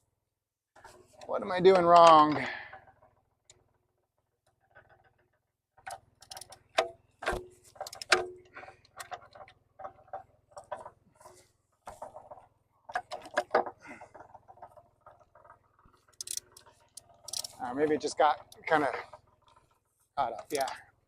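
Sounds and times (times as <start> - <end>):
wrench clicking and clanking on bolt: 5.8 - 9.5, 16.1 - 17.6, 20.4 - 20.8.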